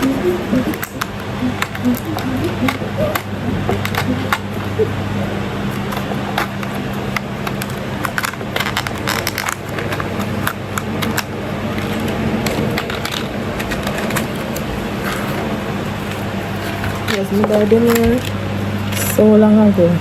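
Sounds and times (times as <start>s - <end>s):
clicks and crackles: 0.0s - 4.9s, 5.7s - 15.4s.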